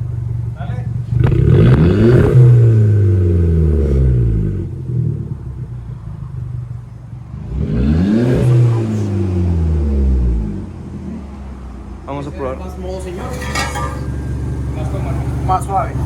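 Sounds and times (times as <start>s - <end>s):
car engine revving: 1.0s - 5.5s, 7.3s - 11.6s.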